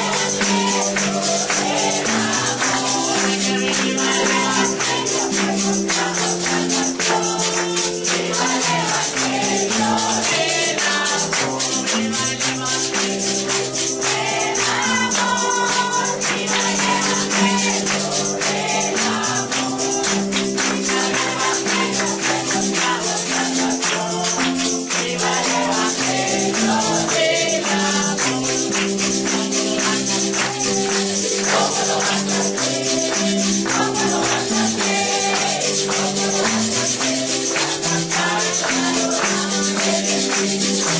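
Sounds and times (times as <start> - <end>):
congregation singing with band: 0.0 - 40.9
tambourine shaking: 0.0 - 40.9.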